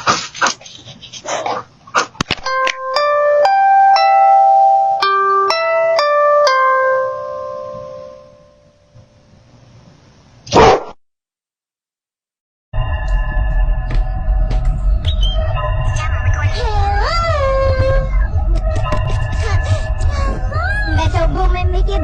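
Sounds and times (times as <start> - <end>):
ringing chime melody: 2.5 - 8.9.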